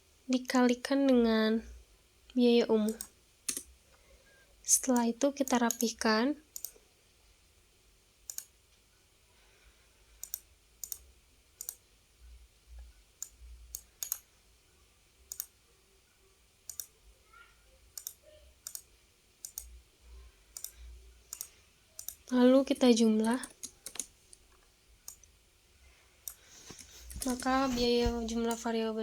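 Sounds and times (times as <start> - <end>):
computer mouse clicking: 2.9 - 3.7, 4.9 - 6.8, 8.3 - 8.6, 10.2 - 11.8, 13.2 - 14.3, 15.3 - 15.6, 16.7 - 17.0, 17.9 - 19.8, 20.5 - 22.4, 23.2 - 25.3, 26.2 - 28.7.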